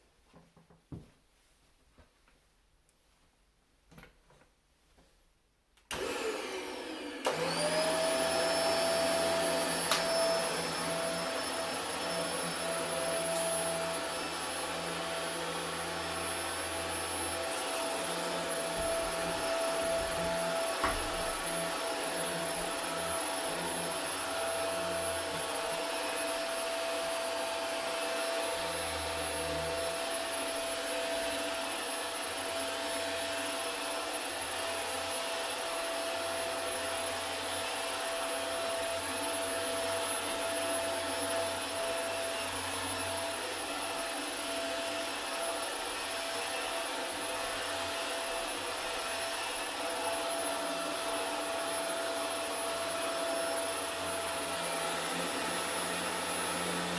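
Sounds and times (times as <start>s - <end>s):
vacuum cleaner motor whine: 5.9s - 56.9s.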